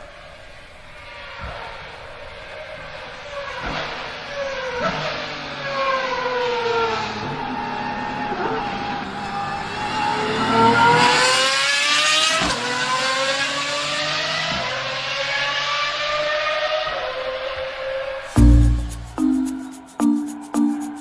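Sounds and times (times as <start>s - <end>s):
car engine accelerating hard: 3.3s - 18.2s.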